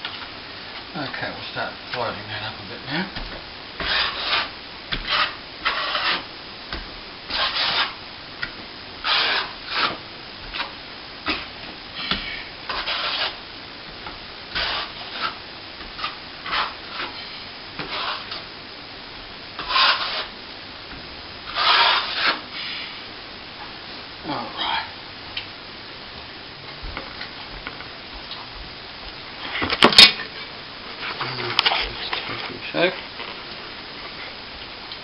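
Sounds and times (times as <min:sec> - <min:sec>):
trowel scraping wet plaster: 0:03.8 - 0:06.2, 0:07.3 - 0:08.0, 0:09.0 - 0:10.7, 0:12.7 - 0:13.4, 0:14.5 - 0:15.4, 0:16.0 - 0:17.2, 0:17.8 - 0:18.4, 0:19.6 - 0:20.3, 0:21.5 - 0:22.4.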